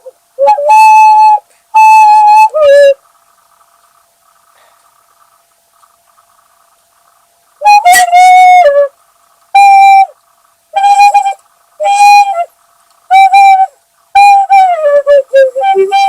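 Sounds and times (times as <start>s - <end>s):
faint hum: 0.0s - 16.0s
shrill recorder notes: 0.4s - 3.0s, 7.6s - 16.0s.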